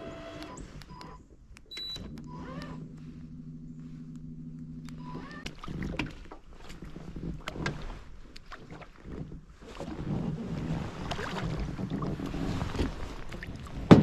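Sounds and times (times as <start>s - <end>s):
low hum: 0.0s - 13.9s
low rumble: 1.8s - 14.0s
water sloshing: 2.0s - 14.0s
knocks and clatter in a boat: 5.1s - 14.0s.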